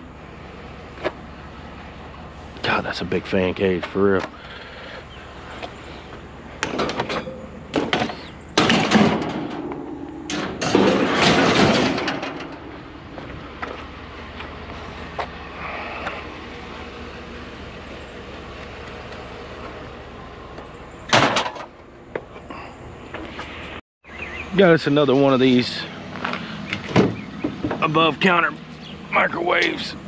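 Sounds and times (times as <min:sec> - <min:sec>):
vehicle idling hum: 0:00.0 - 0:30.0
metal scrap scraping and banging: 0:06.6 - 0:12.8, 0:21.1 - 0:21.7.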